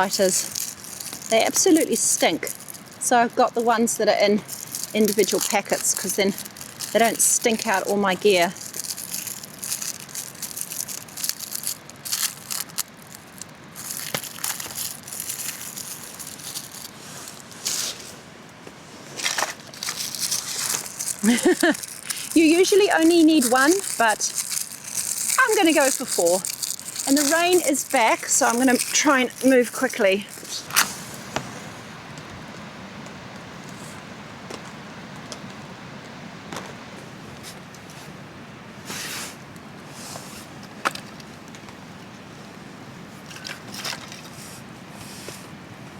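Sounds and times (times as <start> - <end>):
plastic wrappers crinkling and tearing: 0.0 - 17.9, 19.1 - 31.1
steady rain falling: 19.8 - 35.7.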